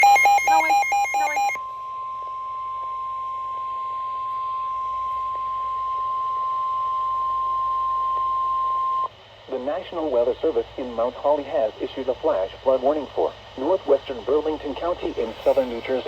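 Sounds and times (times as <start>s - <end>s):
steady alert tone: 0.0s - 1.6s
warbling digital data tones: 0.0s - 8.1s
faint radio hiss: 0.0s - 16.0s.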